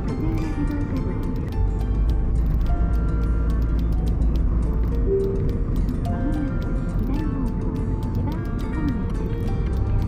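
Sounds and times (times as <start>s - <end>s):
background music with light beat: 0.0s - 10.0s.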